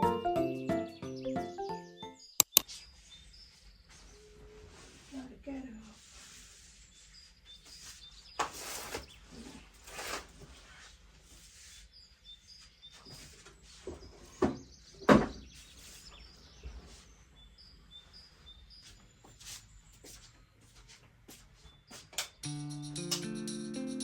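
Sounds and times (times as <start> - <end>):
faint bird chirps: 6.6 - 8.4, 11.7 - 20.8.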